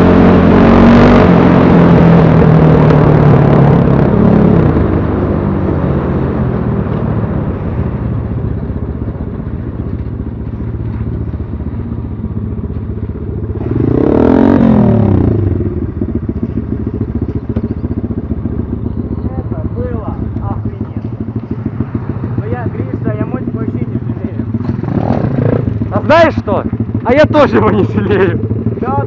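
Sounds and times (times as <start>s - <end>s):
engine note rising and falling: 0.0s - 8.6s, 13.2s - 16.0s
motorcycle engine idling: 8.1s - 29.0s.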